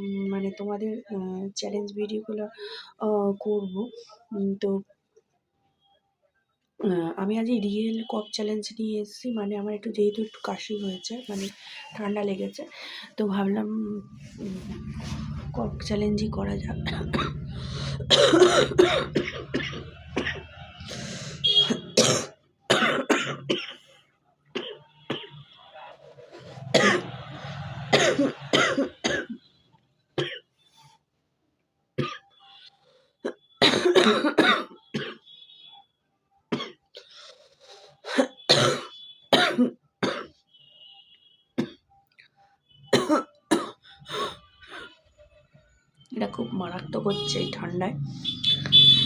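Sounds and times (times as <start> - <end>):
person coughing: 16.9 - 23.8, 26.7 - 27.1, 27.9 - 29.4, 33.6 - 35.2, 38.1 - 40.3, 43.0 - 45.0.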